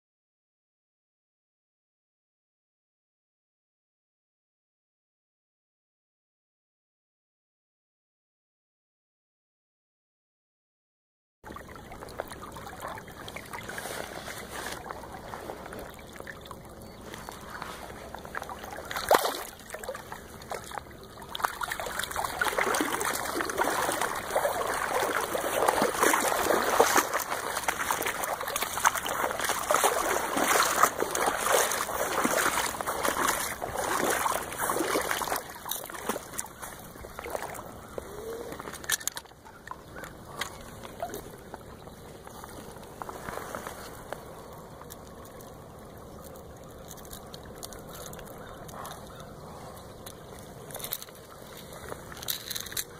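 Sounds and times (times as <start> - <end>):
river water splashing and trickling: 11.4 - 52.9.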